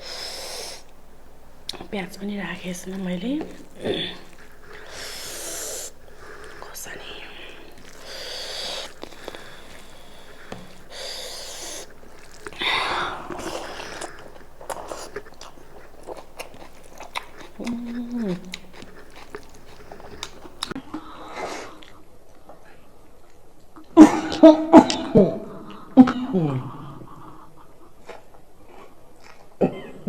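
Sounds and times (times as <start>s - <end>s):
breathy bursts: 0.0s - 1.7s, 2.9s - 16.9s
chewing and biting mouth sounds: 0.3s - 20.8s.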